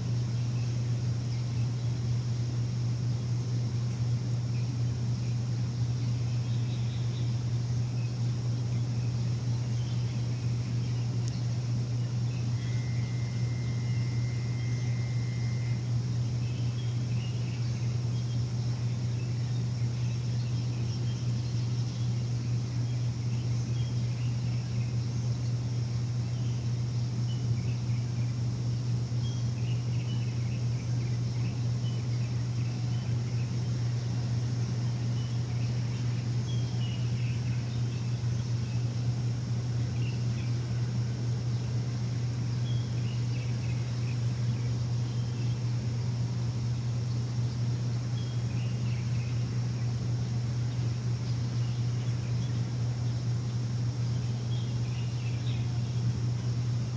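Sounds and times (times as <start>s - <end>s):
bird chirps: 0.0s - 56.9s
low machine hum: 0.0s - 56.9s
thin steady whistle: 12.0s - 17.7s.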